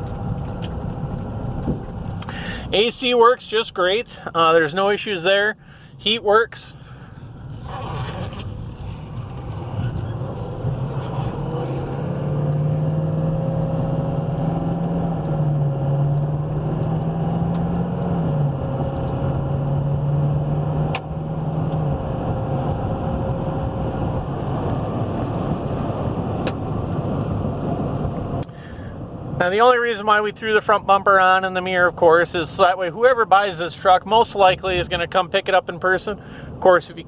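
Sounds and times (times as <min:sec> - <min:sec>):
road and tyre noise: 0:00.0 - 0:37.0
low engine drone: 0:06.7 - 0:29.4.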